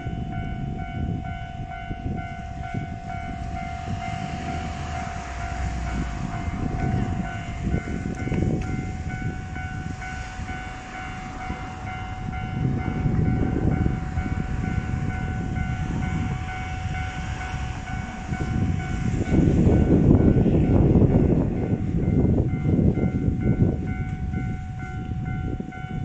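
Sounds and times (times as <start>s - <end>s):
crossing warning bell clanging: 0.0s - 26.0s
train wheels rumbling on rails: 0.0s - 26.0s.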